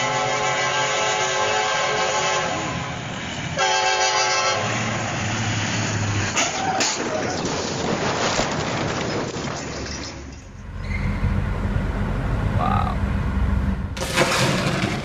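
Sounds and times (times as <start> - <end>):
horn blasts: 0.0 - 2.9, 3.6 - 4.8.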